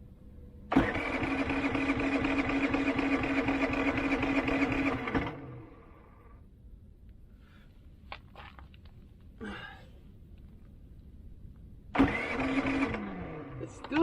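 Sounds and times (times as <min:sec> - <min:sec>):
generator engine humming: 0:00.0 - 0:06.6, 0:11.9 - 0:14.0
short grunt: 0:09.4 - 0:09.9.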